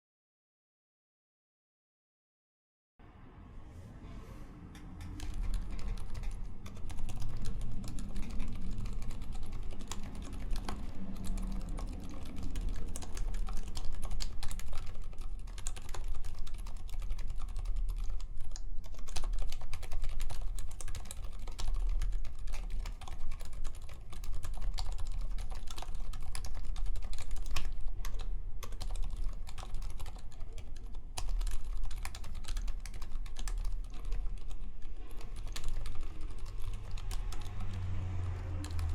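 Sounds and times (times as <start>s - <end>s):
muted keyboard typing: 4.8s - 38.9s.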